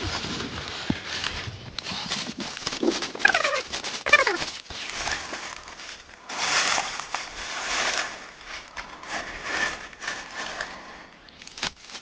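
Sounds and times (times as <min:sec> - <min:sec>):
brush rustling: 0:00.0 - 0:12.0
footsteps crunching: 0:02.0 - 0:10.8.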